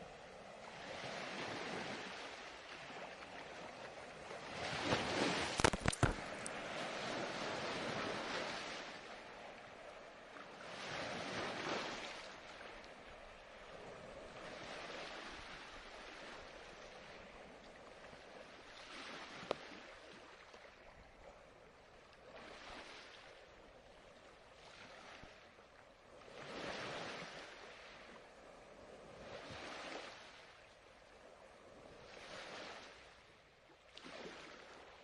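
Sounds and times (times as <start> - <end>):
ocean waves washing in: 0.0 - 23.6.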